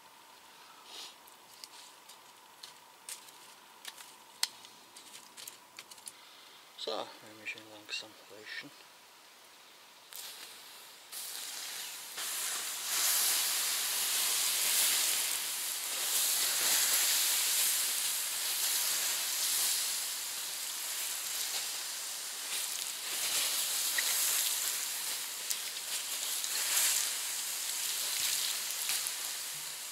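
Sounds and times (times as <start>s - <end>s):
water hissing on embers: 9.2s - 29.9s.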